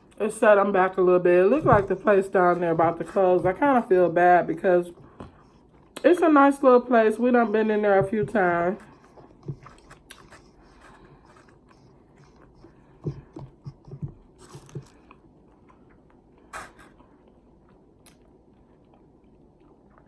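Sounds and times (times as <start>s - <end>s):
chewing and biting food: 8.8s - 20.0s.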